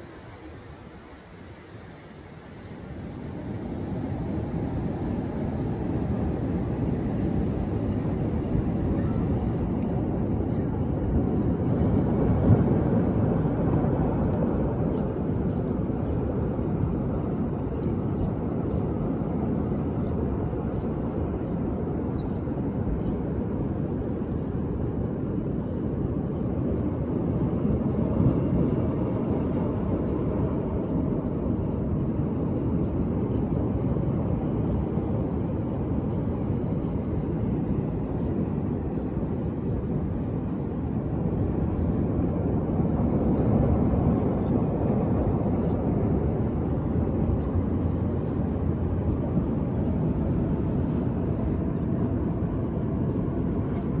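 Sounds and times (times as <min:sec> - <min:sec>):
ocean waves washing: 0:00.0 - 0:09.7.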